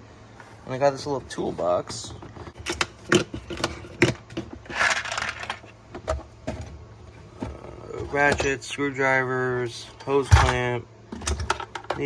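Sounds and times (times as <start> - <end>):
toolbox clicks and clacks: 1.3 - 6.7, 10.0 - 12.0.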